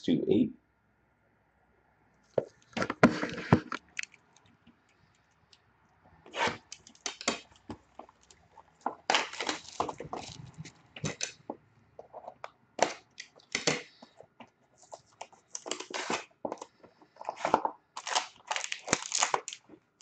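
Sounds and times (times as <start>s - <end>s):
sharp cracks of packaging: 6.3s - 8.4s, 9.0s - 11.4s, 12.8s - 14.0s, 15.5s - 16.7s, 17.3s - 19.7s
plastic wrap crinkling and tearing: 6.3s - 11.3s, 14.8s - 20.0s.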